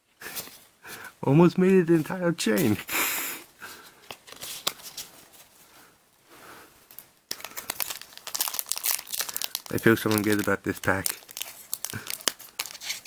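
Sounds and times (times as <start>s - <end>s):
foil wrapper crinkling: 6.9s - 13.0s.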